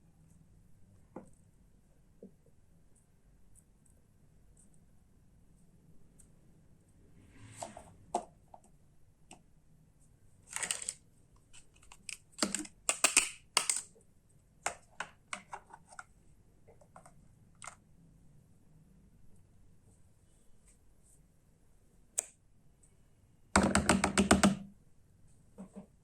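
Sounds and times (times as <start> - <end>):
plastic toy parts clacking: 10.5 - 11.0, 11.6 - 13.9.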